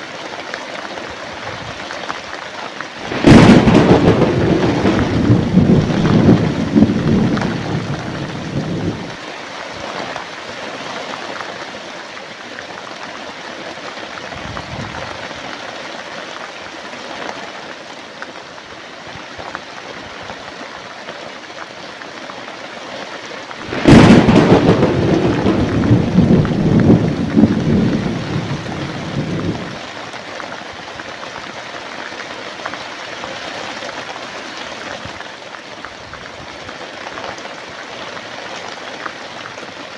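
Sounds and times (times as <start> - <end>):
heavy rain: 0.8 - 12.8, 22.4 - 39.9
sharp thunderclap: 3.0 - 9.2, 23.6 - 29.8
thunder rumbling: 3.0 - 9.2, 23.6 - 29.8.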